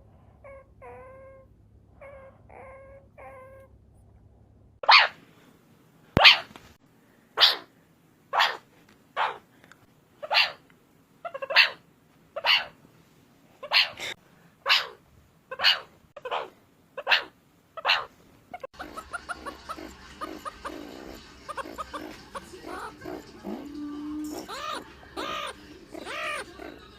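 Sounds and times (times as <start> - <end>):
meerkat barking calls: 0.0 - 3.7, 4.8 - 5.2, 6.2 - 6.5, 7.4 - 7.7, 8.3 - 8.6, 9.2 - 9.4, 10.2 - 10.6, 11.2 - 11.8, 12.4 - 12.8, 13.6 - 26.9
meerkat chirps: 0.4 - 3.7, 6.2 - 6.5, 7.4 - 7.7, 8.3 - 8.6, 10.2 - 10.6, 11.2 - 11.8, 12.4 - 12.8, 13.6 - 26.9.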